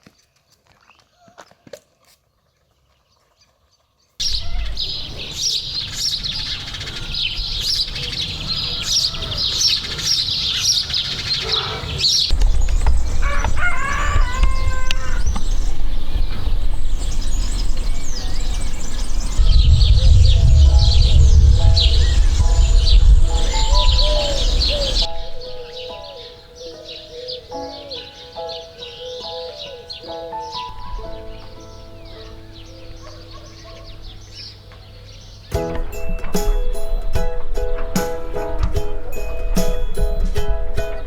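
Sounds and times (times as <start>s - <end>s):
small birds chirping: 4.1s - 41.0s
low rumble: 12.3s - 26.0s.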